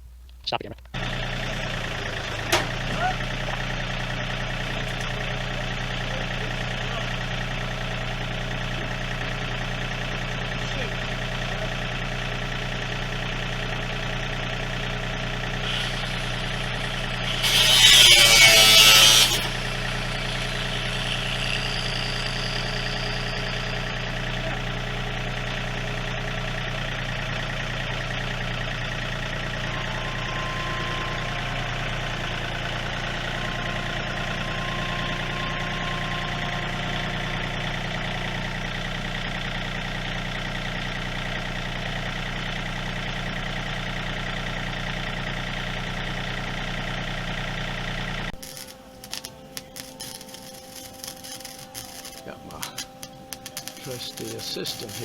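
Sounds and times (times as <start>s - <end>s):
electrical hum: 15.1s - 39.8s, 48.3s - 55.0s
loud hissing burst: 15.6s - 24.0s.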